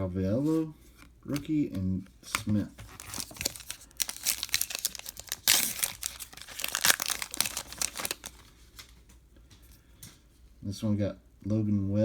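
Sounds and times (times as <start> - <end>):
card pack wrapper crinkling: 2.3 - 8.5
wrapper tearing open: 2.9 - 8.4.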